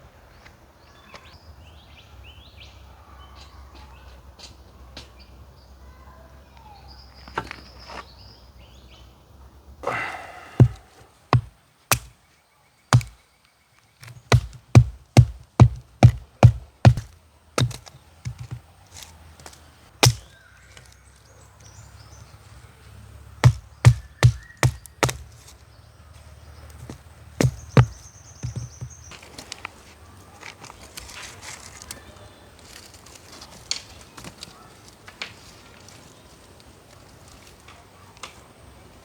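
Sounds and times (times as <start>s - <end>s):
heavy sharp knocks: 10.6s - 12.1s, 13.0s - 13.2s, 14.3s - 18.6s, 20.0s - 20.3s, 23.4s - 25.2s, 27.4s - 29.0s.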